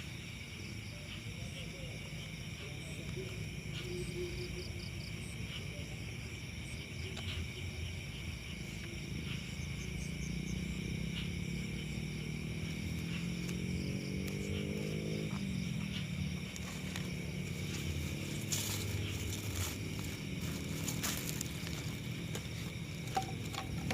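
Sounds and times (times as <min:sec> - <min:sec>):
insects chirping: 0:00.0 - 0:23.9
low droning tone: 0:15.3 - 0:23.9.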